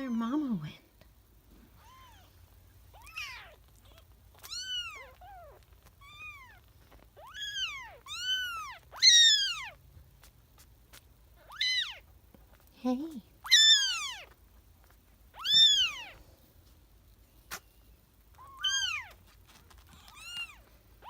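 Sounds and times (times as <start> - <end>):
kittens meowing high-pitched: 1.8 - 2.3, 2.9 - 9.8, 11.4 - 12.1, 13.4 - 14.4, 15.4 - 16.2, 18.3 - 19.2, 20.0 - 20.7.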